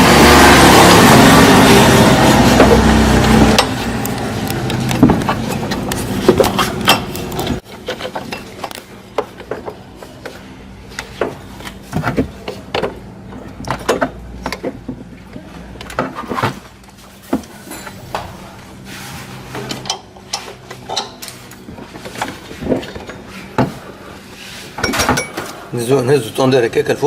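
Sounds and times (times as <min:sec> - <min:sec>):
steady background hum: 0:00.0 - 0:27.0.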